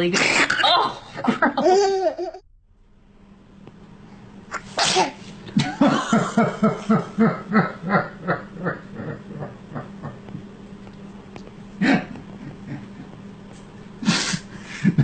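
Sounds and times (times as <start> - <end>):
person sneezing: 4.6 - 5.3, 14.0 - 14.5.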